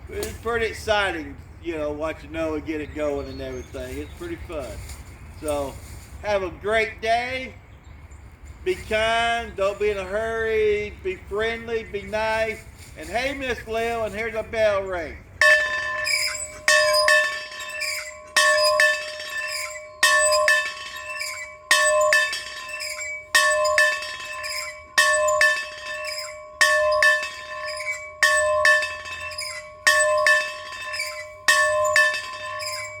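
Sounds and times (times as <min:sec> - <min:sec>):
swinging bell ringing: 0:15.4 - 0:33.0.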